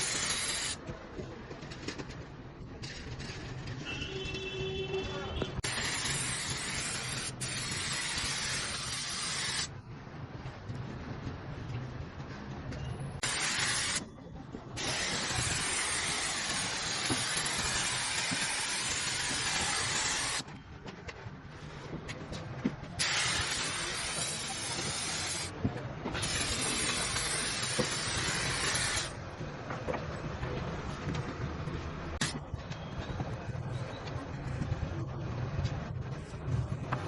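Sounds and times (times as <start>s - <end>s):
spray gun hissing: 0.0s - 0.8s, 5.6s - 9.7s, 13.2s - 14.0s, 14.8s - 20.4s, 23.0s - 25.5s, 26.2s - 29.2s.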